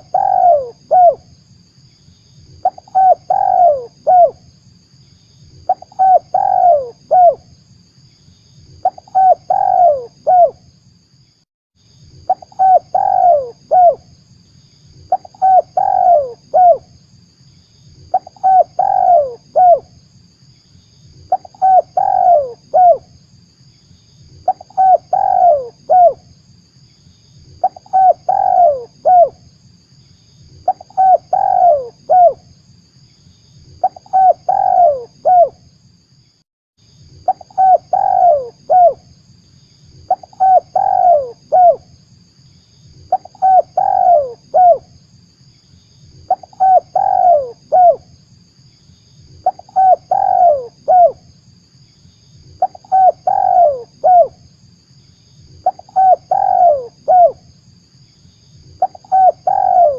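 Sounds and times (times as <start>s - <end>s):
dove cooing: 0.0s - 1.2s, 2.6s - 4.4s, 5.7s - 7.4s, 8.8s - 10.6s, 12.3s - 14.0s, 15.1s - 16.8s, 18.1s - 19.8s, 21.3s - 23.1s, 24.4s - 26.2s, 27.6s - 29.4s, 30.6s - 32.4s, 33.8s - 35.6s, 37.3s - 39.1s, 40.1s - 41.8s, 43.1s - 44.9s, 46.3s - 48.0s, 49.4s - 51.2s, 52.6s - 54.3s, 55.6s - 57.4s, 58.8s - 59.9s.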